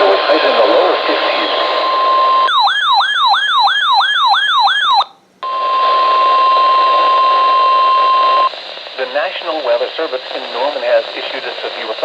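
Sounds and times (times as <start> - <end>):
steady warning alarm tone: 1.6 - 8.5
electronic siren yelping: 1.7 - 8.5.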